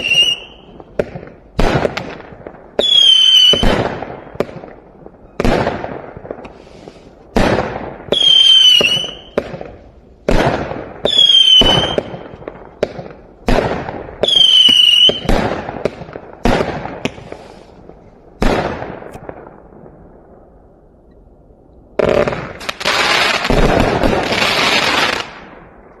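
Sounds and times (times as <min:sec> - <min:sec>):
whistling firework tails: 0:00.0 - 0:18.2
fireworks firing shots: 0:00.0 - 0:19.9, 0:22.0 - 0:26.0
fireworks crackling barrage: 0:00.0 - 0:20.6, 0:21.9 - 0:26.0.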